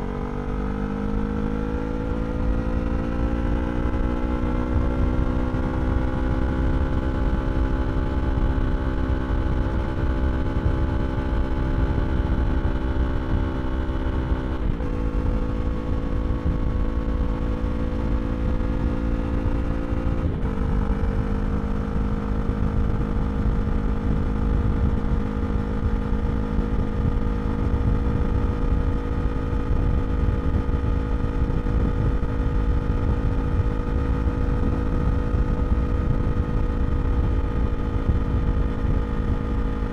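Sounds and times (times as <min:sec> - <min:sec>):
motorcycle engine accelerating: 0:00.0 - 0:39.9
wind rush: 0:22.6 - 0:39.9.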